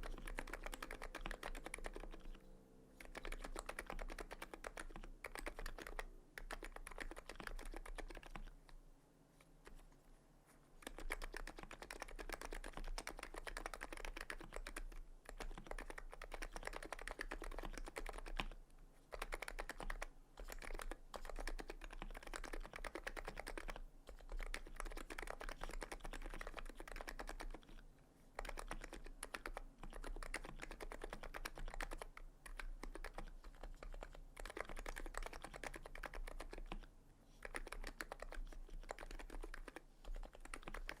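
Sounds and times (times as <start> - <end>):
fast keyboard typing: 0.0 - 2.4, 3.0 - 8.6, 10.8 - 41.0.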